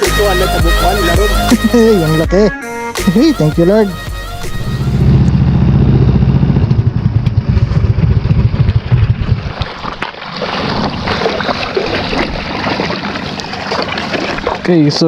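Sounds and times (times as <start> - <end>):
boat engine throbbing: 0.0 - 15.0
water rushing and splashing: 8.6 - 15.0.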